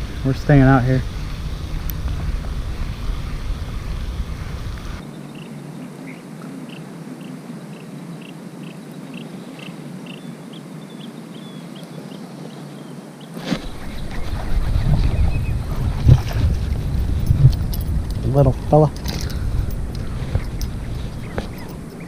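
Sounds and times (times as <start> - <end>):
low rumble: 0.0 - 5.0, 13.6 - 22.0
wind: 0.0 - 22.0.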